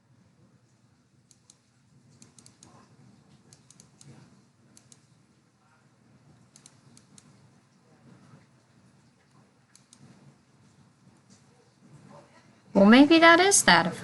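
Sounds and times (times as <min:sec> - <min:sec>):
computer mouse clicking: 0:01.3 - 0:02.8, 0:03.4 - 0:05.1, 0:06.4 - 0:07.4, 0:09.7 - 0:10.2.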